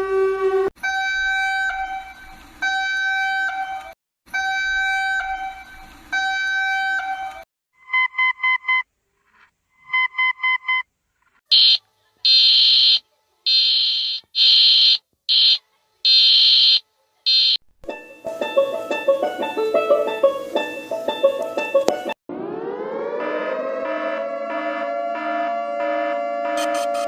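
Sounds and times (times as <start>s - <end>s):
synthesized alarm tones: 16.5s - 27.0s.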